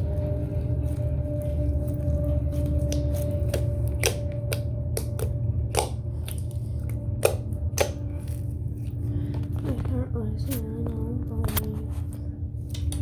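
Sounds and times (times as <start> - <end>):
steady low hum: 0.0 - 13.0
slime squishing and popping: 2.5 - 9.0.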